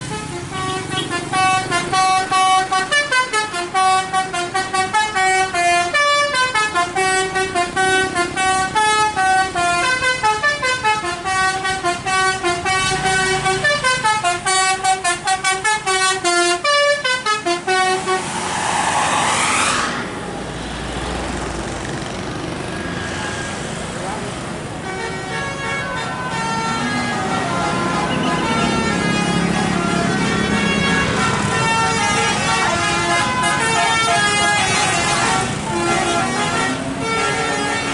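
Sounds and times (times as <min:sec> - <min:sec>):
bus horn melody: 0:00.0 - 0:18.3, 0:24.7 - 0:37.9
vehicle noise: 0:00.0 - 0:37.9
loud rushing noise: 0:17.6 - 0:24.0.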